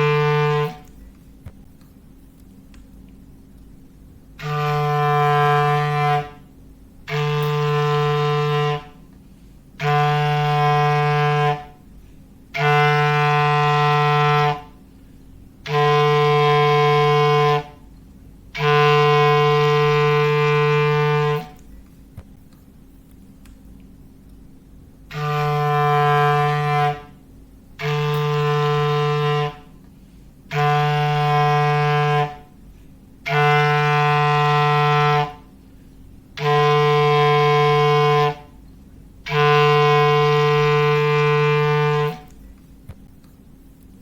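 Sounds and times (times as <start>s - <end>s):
clarinet low note blasts: 0.0s - 1.0s, 4.4s - 9.2s, 9.8s - 11.9s, 12.5s - 14.8s, 15.6s - 17.9s, 18.5s - 21.6s, 25.1s - 29.8s, 30.5s - 32.6s, 33.2s - 35.6s, 36.3s - 38.6s, 39.2s - 42.4s.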